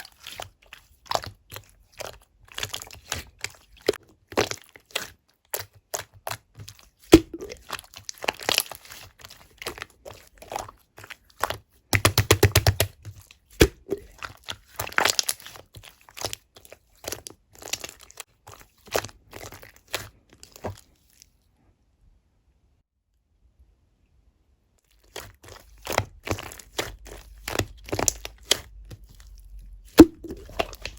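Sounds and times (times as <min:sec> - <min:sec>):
slime popping when pressed: 0:07.1 - 0:07.6, 0:30.0 - 0:30.9.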